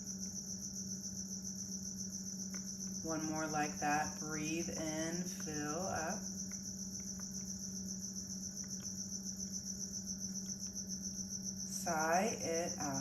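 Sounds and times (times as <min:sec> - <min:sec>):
crickets chirping: 0:00.0 - 0:13.0
low steady hum: 0:00.0 - 0:13.0.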